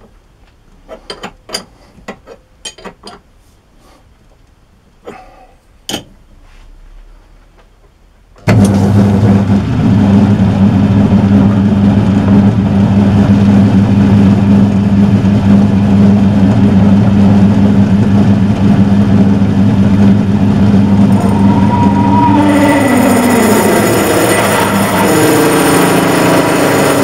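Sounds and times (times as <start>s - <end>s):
metal lathe motor humming: 19.7s - 27.0s.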